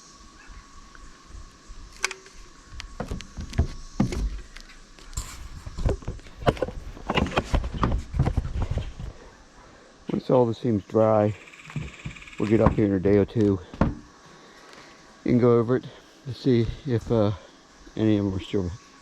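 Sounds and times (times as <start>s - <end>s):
clicks knocks and thumps on metal: 11.7s - 12.9s, 13.7s - 14.1s.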